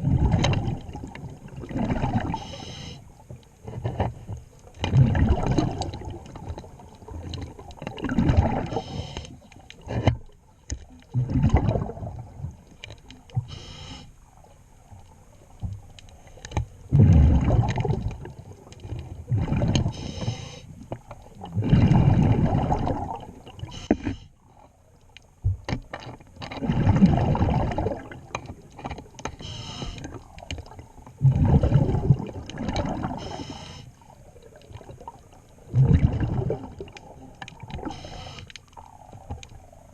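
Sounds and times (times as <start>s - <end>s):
underwater regulator bubbles: 0.0s - 2.9s, 4.8s - 10.2s, 10.8s - 14.0s, 16.9s - 24.2s, 26.4s - 39.7s
hiss of inhaling through regulator: 2.3s - 3.1s, 8.7s - 9.5s, 13.4s - 14.2s, 19.9s - 20.7s, 29.4s - 30.2s, 33.1s - 34.0s, 37.8s - 38.6s.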